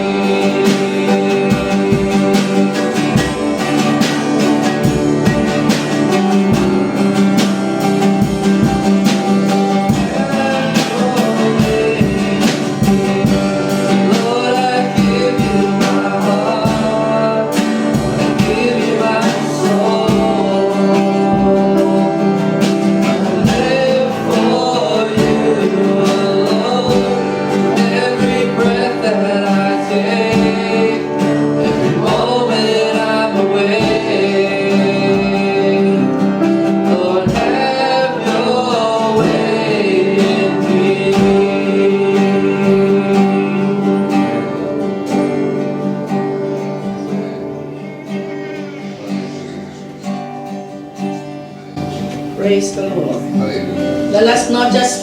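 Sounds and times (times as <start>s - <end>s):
steady beat: 0.0s - 28.8s, 51.8s - 55.0s
guitar: 0.0s - 55.0s
person singing: 0.0s - 55.0s.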